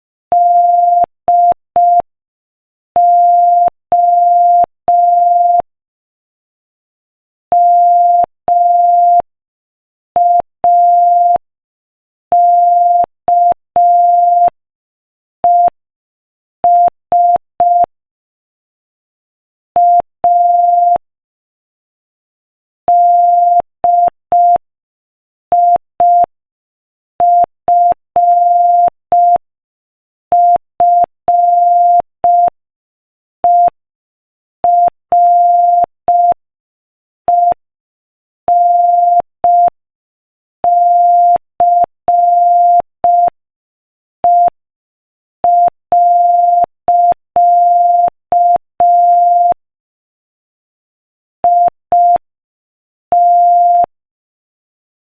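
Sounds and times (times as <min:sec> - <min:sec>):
morse code beeps: 0:19.8 - 0:21.0, 0:22.9 - 0:24.6, 0:25.5 - 0:26.3, 0:27.2 - 0:29.4, 0:30.3 - 0:32.6, 0:33.4 - 0:33.8, 0:34.6 - 0:36.4, 0:37.3 - 0:37.6, 0:38.5 - 0:39.8, 0:40.6 - 0:43.4, 0:44.2 - 0:44.6, 0:45.4 - 0:49.6, 0:51.4 - 0:52.2, 0:53.1 - 0:53.9.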